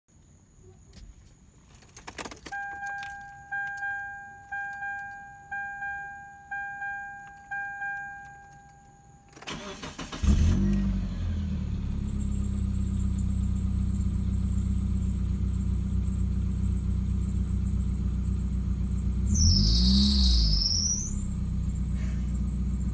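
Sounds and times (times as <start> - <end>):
car engine cranking and idling: 0.9 - 22.9
key clicks: 1.8 - 6.0
dashboard warning chime: 2.5 - 10.3.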